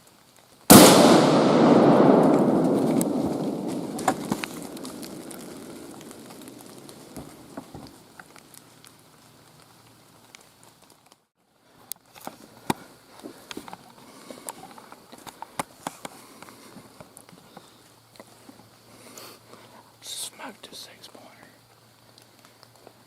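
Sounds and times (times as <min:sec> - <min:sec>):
small ticks and crackles: 0:00.0 - 0:00.7, 0:02.3 - 0:23.0
rifle shot echoing: 0:00.7 - 0:07.6.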